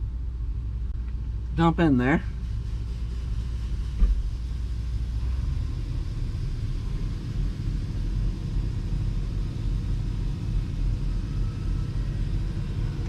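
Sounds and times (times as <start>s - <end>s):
short thump: 4.0s - 4.3s.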